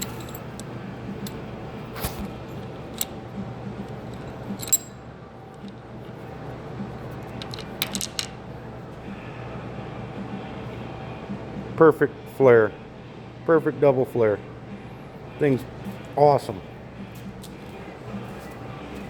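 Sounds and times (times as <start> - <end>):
metallic clicks and clinks: 0.0 - 3.2, 3.9 - 5.0, 7.3 - 8.3
steady low hum: 0.0 - 19.0.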